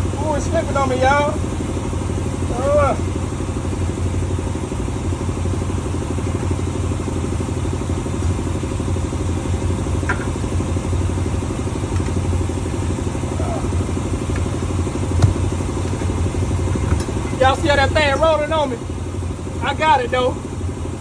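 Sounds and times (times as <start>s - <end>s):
truck engine idling: 0.0s - 21.0s
light metal clank: 10.0s - 10.5s, 16.8s - 17.4s.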